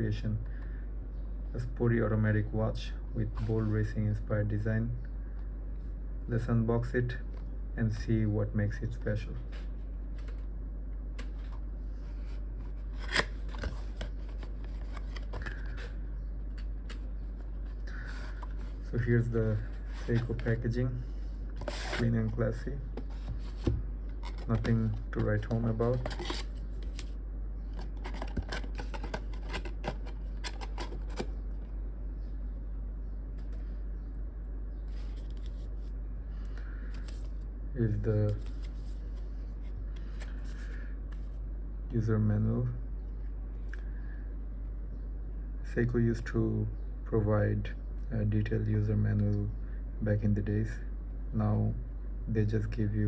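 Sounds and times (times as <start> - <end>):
low hum: 0.0 - 53.0
paper rustling: 11.2 - 15.9, 17.4 - 20.6, 21.6 - 27.1, 27.8 - 31.3
packaging clicks and rustles: 23.0 - 27.1, 27.7 - 31.4.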